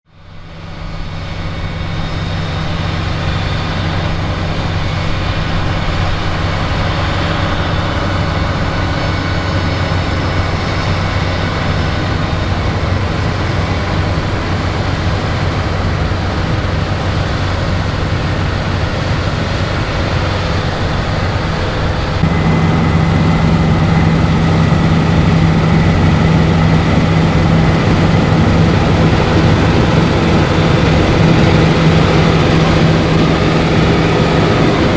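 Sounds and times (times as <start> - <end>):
combine harvester engine hum: 0.3 - 34.9
threshing machinery noise: 22.2 - 34.9.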